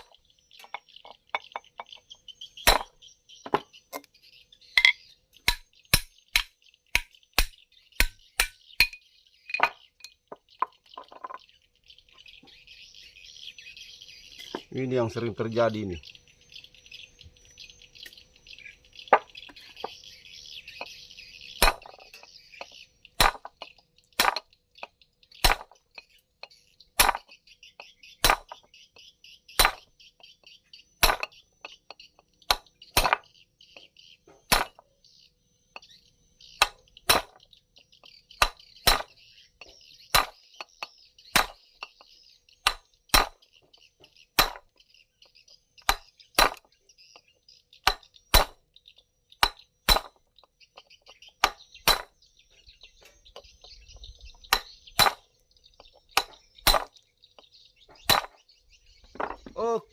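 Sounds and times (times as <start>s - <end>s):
hammer clinking on metal: 4.8s - 10.2s, 44.4s - 44.7s, 47.8s - 48.6s, 49.4s - 50.2s, 51.4s - 52.1s.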